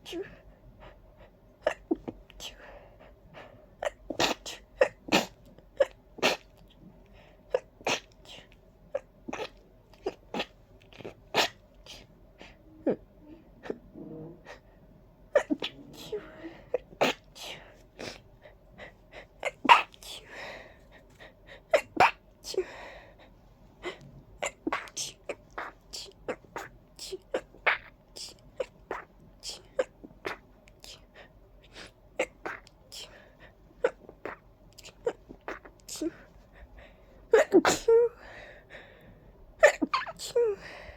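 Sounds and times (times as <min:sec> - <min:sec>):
person sneezing: 0:37.4 - 0:38.0.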